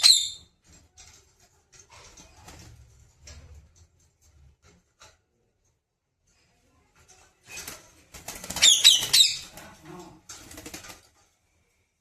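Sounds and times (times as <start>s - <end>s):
parrot chirping: 0.0s - 0.5s, 8.6s - 9.6s
parrot flapping wings: 7.5s - 11.4s.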